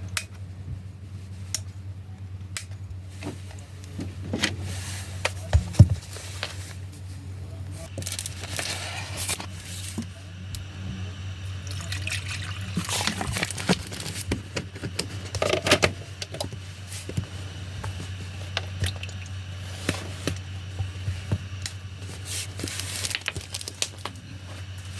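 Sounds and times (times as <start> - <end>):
coffee machine pump hum: 0.0 - 24.9
water pouring and gurgling: 11.6 - 14.2, 18.6 - 19.4.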